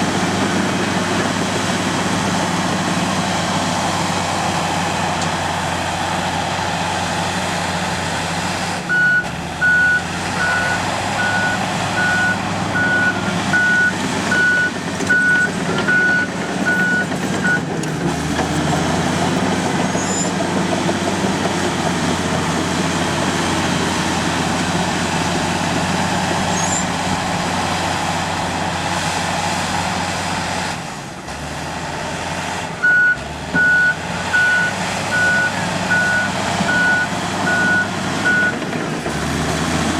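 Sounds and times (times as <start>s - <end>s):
bulldozer diesel engine: 0.0s - 39.9s
reverse alarm beeping: 8.9s - 17.6s, 32.8s - 38.6s.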